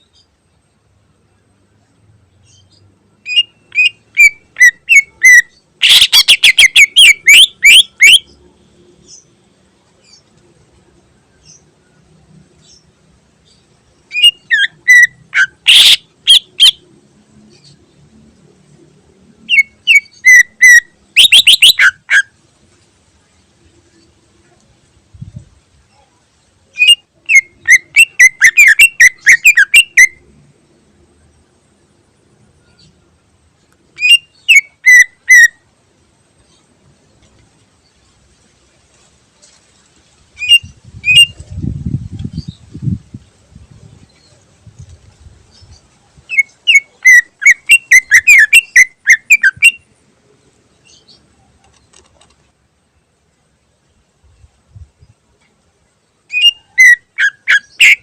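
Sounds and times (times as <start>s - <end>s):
bird singing whistled notes: 2.6s - 8.3s, 14.1s - 16.8s, 19.4s - 22.3s, 26.7s - 30.2s, 34.0s - 35.6s, 40.4s - 43.0s, 45.5s - 49.9s, 56.3s - 58.0s.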